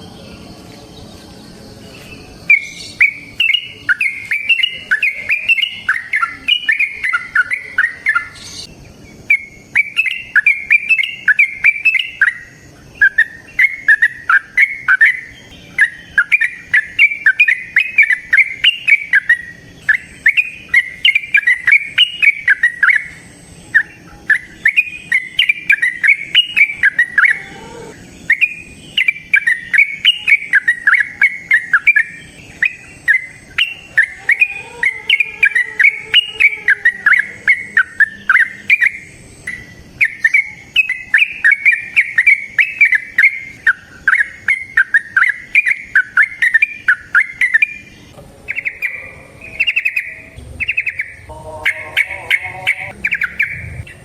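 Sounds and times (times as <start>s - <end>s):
bird singing rapid notes: 0.0s - 54.0s.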